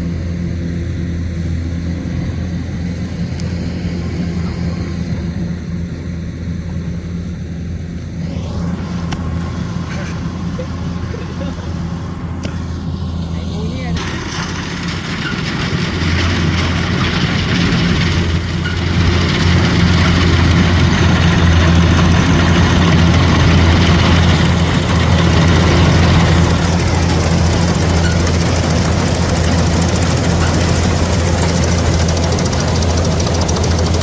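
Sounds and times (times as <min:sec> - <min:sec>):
combine harvester diesel engine running: 0:00.0 - 0:34.0
machinery clatter: 0:12.3 - 0:34.0.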